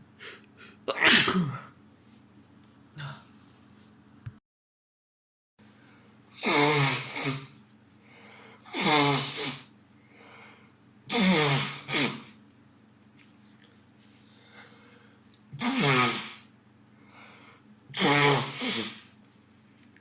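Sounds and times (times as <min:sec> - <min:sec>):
man sneezing: 0:00.9 - 0:01.7, 0:11.1 - 0:12.4, 0:15.6 - 0:16.4, 0:17.9 - 0:19.1.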